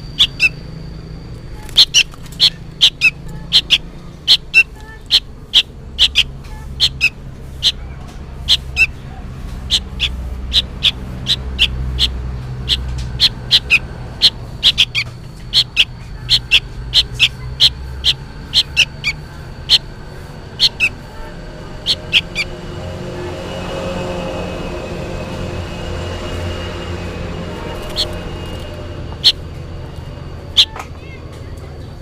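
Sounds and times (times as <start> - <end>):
young bird calling sharply: 1.6 - 21.2, 30.5 - 30.8.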